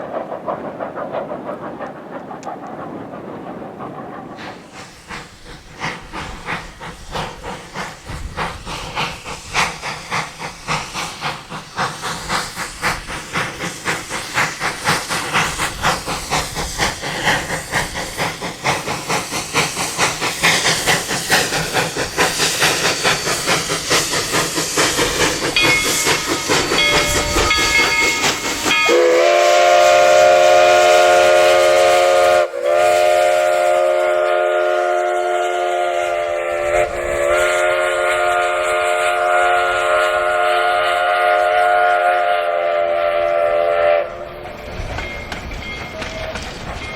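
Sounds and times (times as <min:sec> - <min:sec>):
steam locomotive exhaust chuffing: 0:00.0 - 0:46.9
steam whistle blast: 0:25.9 - 0:44.3.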